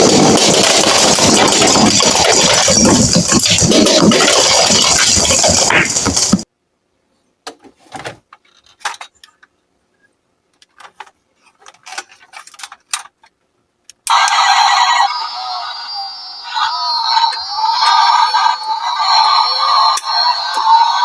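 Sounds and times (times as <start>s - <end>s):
loud dense rattling: 0.0s - 6.4s
toy cars clicking and clinking: 10.6s - 13.3s.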